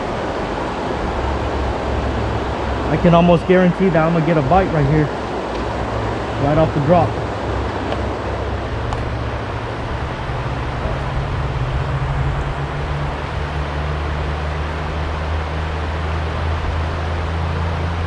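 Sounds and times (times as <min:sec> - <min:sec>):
river water rushing: 0:00.0 - 0:18.0
deep low rumble: 0:07.5 - 0:15.1.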